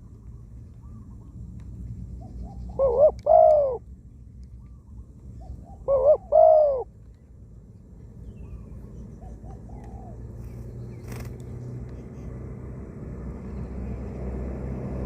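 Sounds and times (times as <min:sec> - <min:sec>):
small birds chirping: 0:00.0 - 0:12.4
dove cooing: 0:02.2 - 0:03.8, 0:05.4 - 0:06.9, 0:09.2 - 0:10.4.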